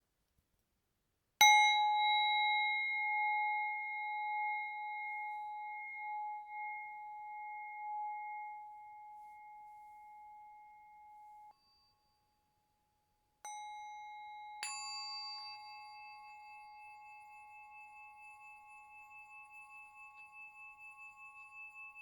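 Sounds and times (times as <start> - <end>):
singing bowl ringing: 13.5 - 22.0.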